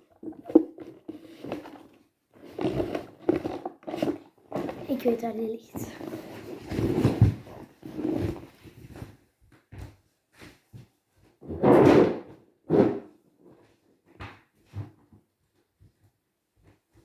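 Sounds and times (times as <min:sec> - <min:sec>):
knocks and rustling of rummaging: 0:00.1 - 0:13.8.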